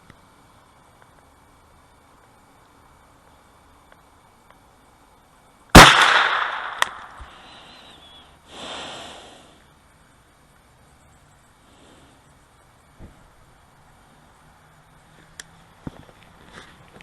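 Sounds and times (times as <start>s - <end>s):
rifle shot echoing: 5.7s - 7.2s.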